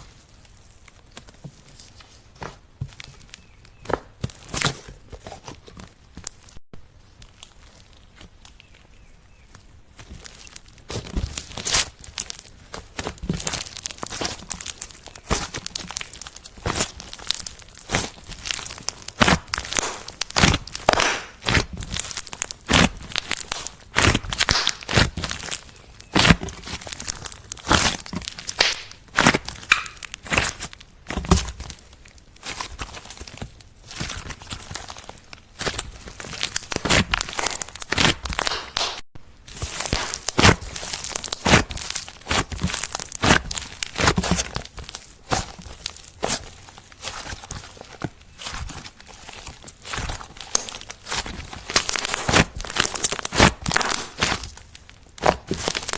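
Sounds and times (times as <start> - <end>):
slime squeezed with sticky crackles: 6.2 - 55.9
slime squelching pops: 23.5 - 25.2.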